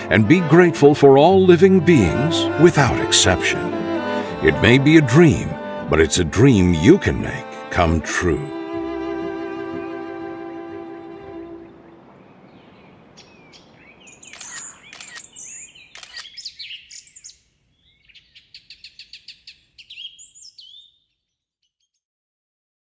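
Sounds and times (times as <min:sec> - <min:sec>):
faint outdoor hiss: 0:00.0 - 0:20.6
songbirds chirping: 0:00.0 - 0:22.0
bird trill: 0:11.6 - 0:22.0
sharp clicks: 0:14.3 - 0:15.3, 0:16.0 - 0:16.4.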